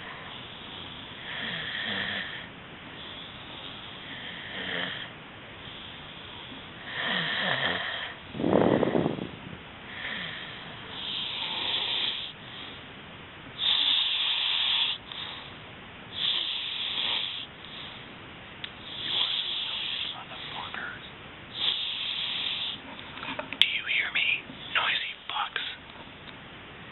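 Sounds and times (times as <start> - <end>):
people snoring: 0.0 - 5.1, 5.7 - 9.1, 9.9 - 12.4, 13.6 - 15.5, 16.2 - 18.0, 18.8 - 21.0, 21.6 - 22.9.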